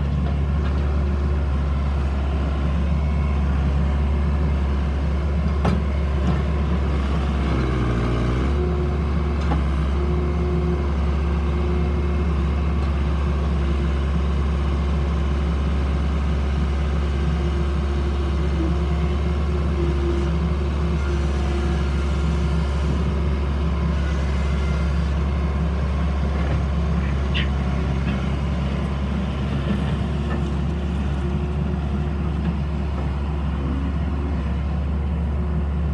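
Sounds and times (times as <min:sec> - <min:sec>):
diesel engine running: 0:00.0 - 0:35.9.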